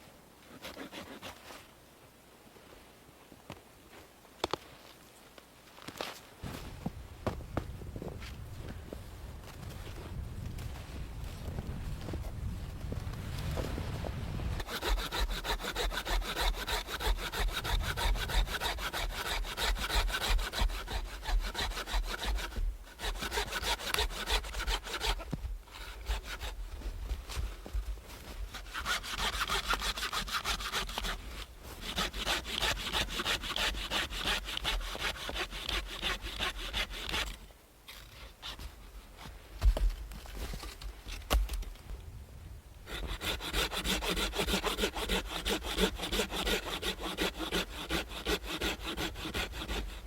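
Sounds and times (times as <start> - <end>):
hand saw cutting wood: 0.5 - 1.6, 14.6 - 26.6, 28.5 - 37.4, 42.9 - 50.0.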